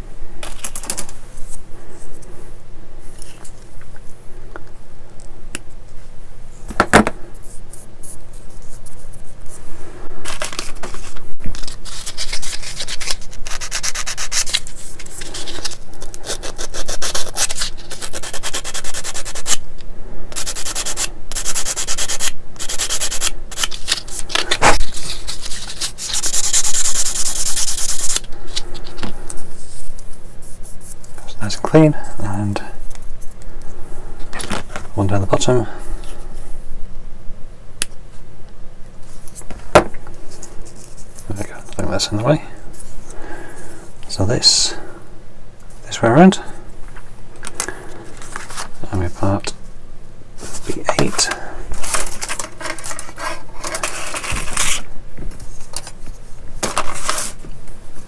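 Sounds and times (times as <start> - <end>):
sanding plastic part: 11.8 - 19.6.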